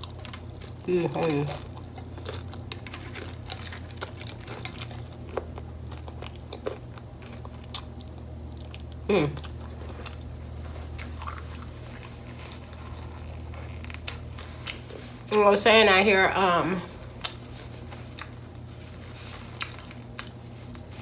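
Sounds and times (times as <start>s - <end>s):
chewing crunchy taco shell: 0.0s - 15.4s, 16.8s - 21.0s
steady low hum: 0.0s - 21.0s.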